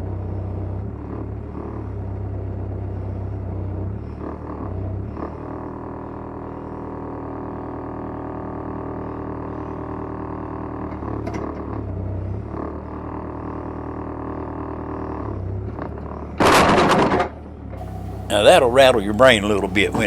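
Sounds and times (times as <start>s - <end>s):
backhoe engine running: 17.8s - 20.0s.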